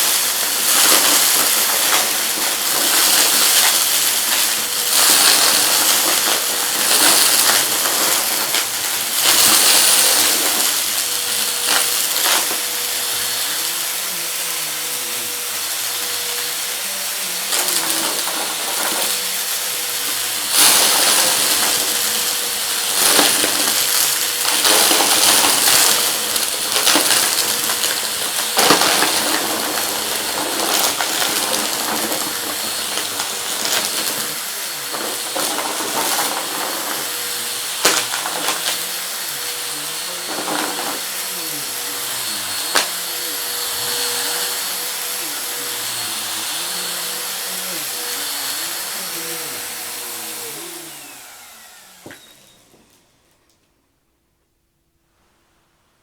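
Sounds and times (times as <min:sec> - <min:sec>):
debris rattling in vacuum: 0:00.0 - 0:53.6
vacuum cleaner running: 0:00.0 - 0:53.9.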